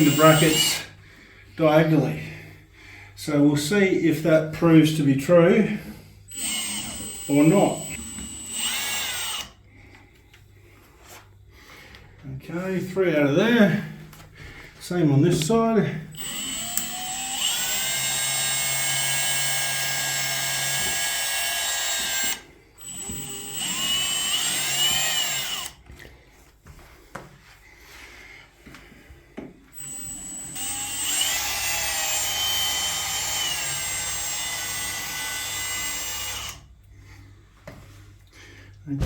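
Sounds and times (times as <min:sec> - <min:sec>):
power drill backing out screws: 0:00.0 - 0:00.8, 0:06.3 - 0:09.5, 0:16.2 - 0:25.8, 0:29.7 - 0:36.6.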